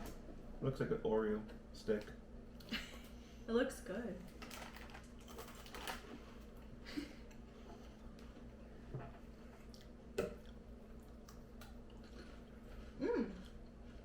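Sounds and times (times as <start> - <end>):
chewing a cookie: 4.5 - 14.0
person humming mm: 12.9 - 13.5.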